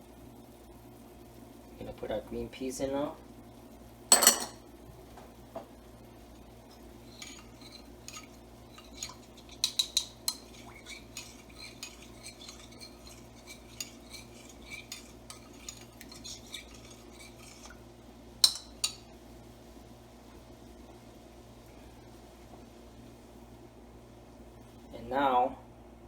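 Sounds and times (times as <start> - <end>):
utensil clinking and scraping pan: 4.1 - 4.6, 7.0 - 17.8, 18.4 - 19.0.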